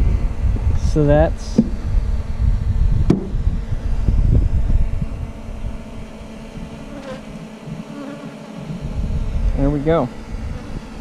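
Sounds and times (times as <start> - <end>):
low microphone rumble: 0.0 - 11.0
honeybees humming: 1.6 - 11.0.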